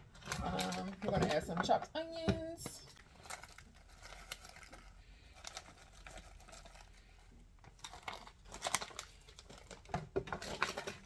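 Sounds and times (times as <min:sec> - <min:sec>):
food packaging crinkling: 0:00.0 - 0:11.0.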